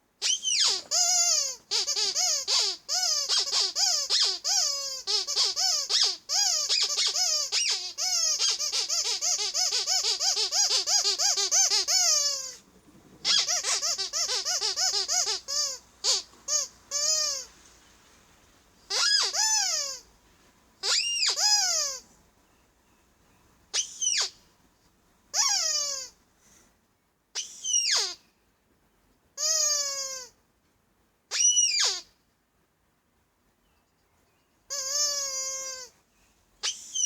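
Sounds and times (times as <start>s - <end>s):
rubber duck toy squeaking: 0.2s - 12.6s, 13.2s - 17.5s, 18.9s - 20.0s, 20.8s - 22.0s, 23.7s - 24.4s, 25.3s - 26.2s, 27.4s - 28.2s, 29.4s - 30.4s, 31.3s - 32.2s, 34.7s - 35.9s, 36.6s - 37.0s.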